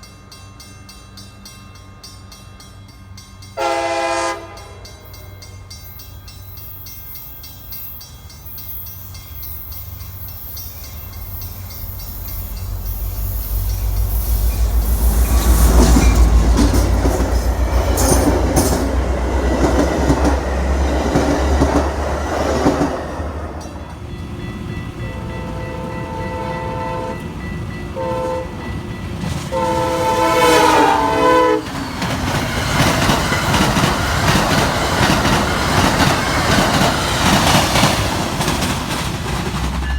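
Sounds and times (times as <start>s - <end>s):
rail cars clattering: 0.0s - 39.9s
train rumbling on rails: 0.0s - 39.9s
train air horn chord blasts: 3.6s - 5.3s, 25.1s - 27.3s, 28.0s - 28.7s, 29.5s - 31.8s.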